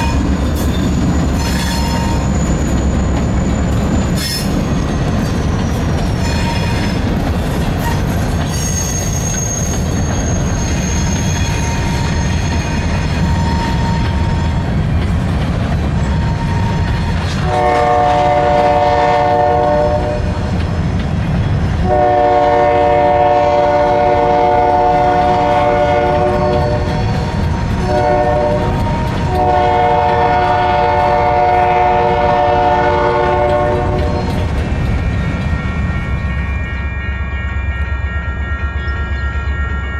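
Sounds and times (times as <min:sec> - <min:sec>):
train rumbling: 0:00.0 - 0:39.9
thin high squeal: 0:08.5 - 0:14.1
locomotive air horn blasts: 0:16.1 - 0:20.4, 0:21.8 - 0:34.3.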